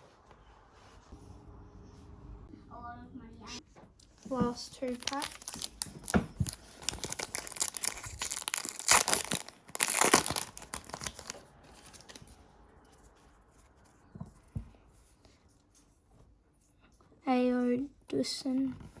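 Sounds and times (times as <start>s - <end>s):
wrapper tearing and crinkling: 4.8s - 12.2s.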